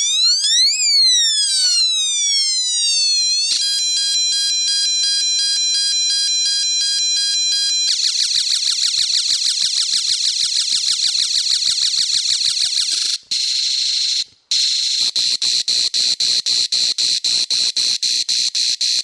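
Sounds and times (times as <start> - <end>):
falling siren-like pitch sweep: 0.0 - 3.8
fast buzzy electronic chirp: 0.0 - 18.0.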